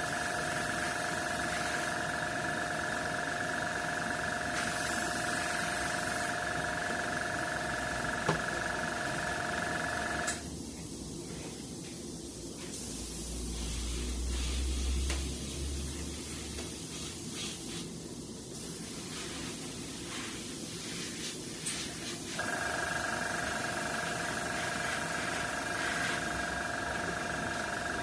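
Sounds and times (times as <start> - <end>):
paint spraying hiss: 0.0 - 2.7, 4.5 - 9.2, 12.6 - 28.0
machine hum with tones: 0.0 - 10.4, 22.4 - 28.0.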